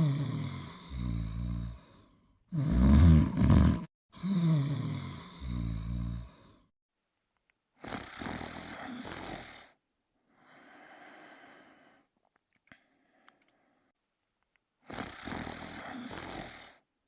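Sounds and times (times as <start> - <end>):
cartoon snore: 0.0 - 6.6, 7.8 - 9.8, 14.8 - 16.8
rasping breath: 7.8 - 12.1, 14.9 - 16.8.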